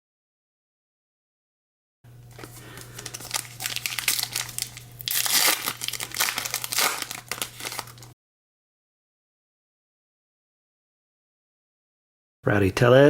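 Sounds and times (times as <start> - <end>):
steady low hum: 2.1 - 8.1
foil wrapper tearing and crinkling: 2.4 - 8.2.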